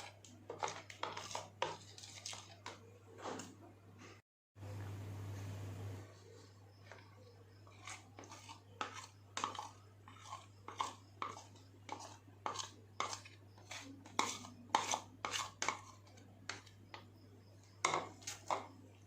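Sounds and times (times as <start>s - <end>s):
steady low hum: 2.8s - 14.7s.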